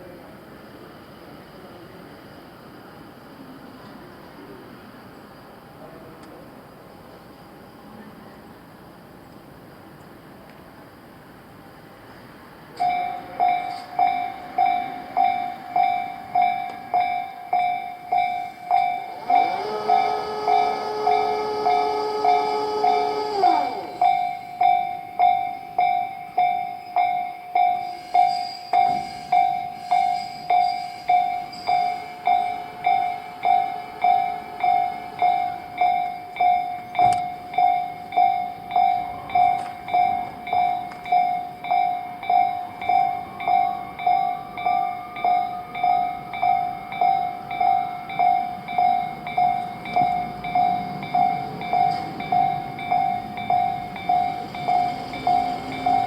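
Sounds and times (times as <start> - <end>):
level-crossing warning bell ringing: 12.7 - 56.0.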